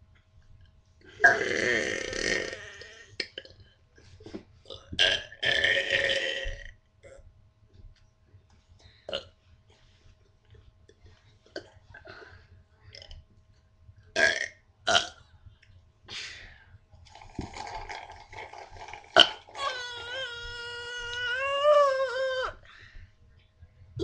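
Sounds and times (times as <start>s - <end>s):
person burping: 1.2s - 3.5s, 4.7s - 7.2s, 14.2s - 15.2s, 17.2s - 20.3s.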